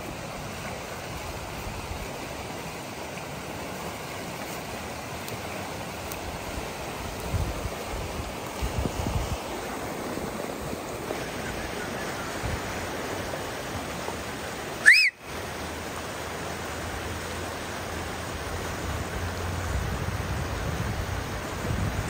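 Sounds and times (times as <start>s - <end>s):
whistle-like chirp: 14.8s - 15.2s.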